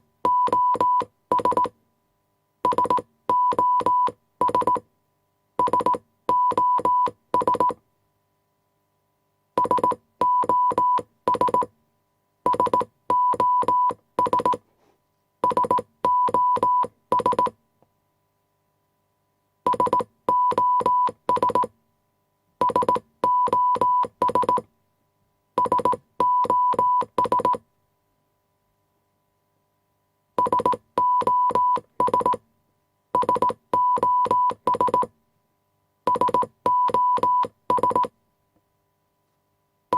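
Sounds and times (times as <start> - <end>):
morse code beeps: 0.3 - 1.7, 2.7 - 4.8, 5.6 - 7.8, 9.6 - 11.7, 12.5 - 14.6, 15.4 - 17.6, 19.7 - 21.7, 22.6 - 24.6, 25.6 - 27.6, 30.4 - 32.4, 33.2 - 35.1, 36.1 - 38.1.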